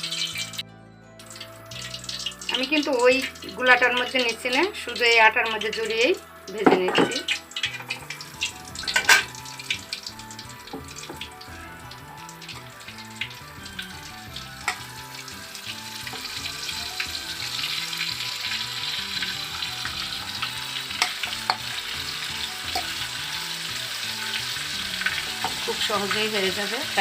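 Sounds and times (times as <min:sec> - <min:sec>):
chicken sizzling in oil: 0:00.0 - 0:00.6, 0:01.2 - 0:27.0
utensil clicking against pan: 0:01.3 - 0:06.0, 0:06.6 - 0:11.4, 0:14.6 - 0:15.3, 0:19.8 - 0:23.0.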